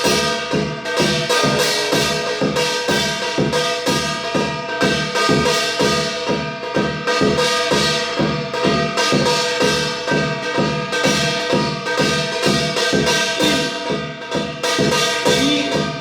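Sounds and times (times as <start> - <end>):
quick percussion strokes: 0.0 - 16.0.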